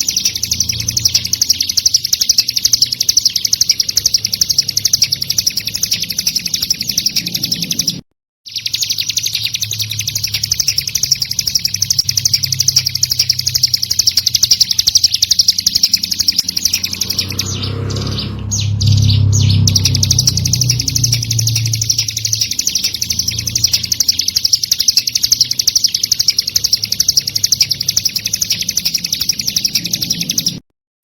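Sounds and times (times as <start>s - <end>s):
bird singing a fast trill: 0.0s - 30.6s
low hum: 9.9s - 25.0s.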